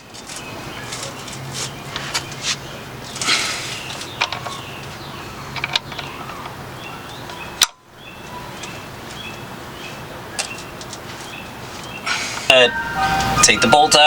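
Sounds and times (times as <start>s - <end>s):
bird chirps: 11.3s - 14.0s.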